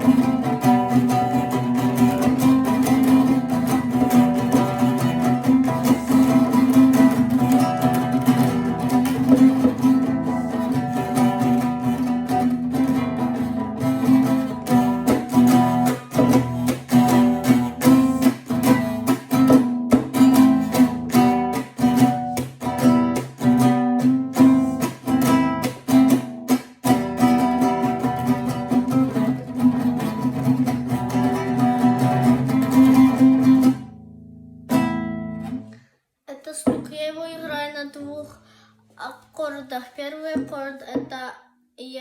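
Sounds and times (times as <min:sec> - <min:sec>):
acoustic guitar strumming: 0:00.0 - 0:35.8, 0:36.5 - 0:41.3.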